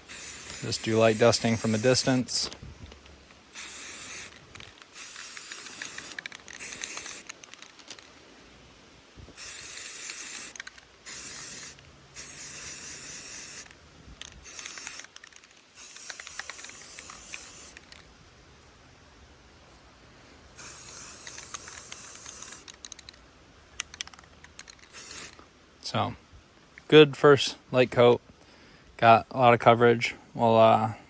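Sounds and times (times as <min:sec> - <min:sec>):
spray paint can hissing: 0:00.0 - 0:02.5, 0:03.5 - 0:08.1, 0:09.3 - 0:18.0, 0:20.6 - 0:23.2, 0:23.8 - 0:25.4.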